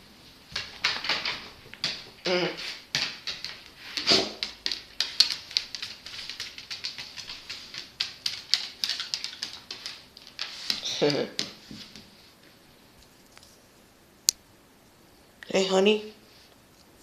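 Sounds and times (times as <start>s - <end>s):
dog's teeth chattering: 2.9s - 11.5s.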